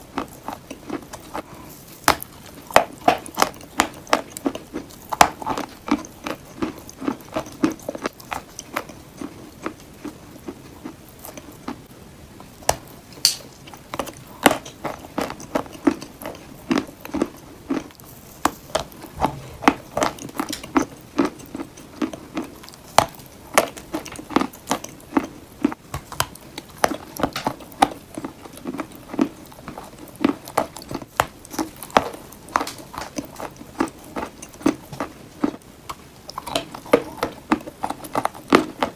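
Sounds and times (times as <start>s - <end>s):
chalk being chewed: 13.2s - 38.9s.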